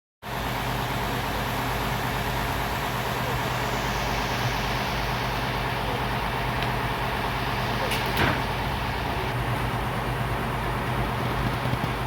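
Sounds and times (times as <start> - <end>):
heavy machinery humming: 0.2 - 12.0.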